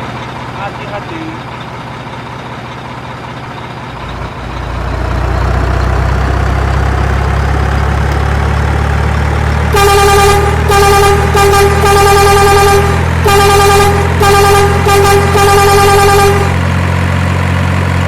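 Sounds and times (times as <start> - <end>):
truck engine rumbling: 0.0 - 18.0
truck horn honking: 9.6 - 16.8.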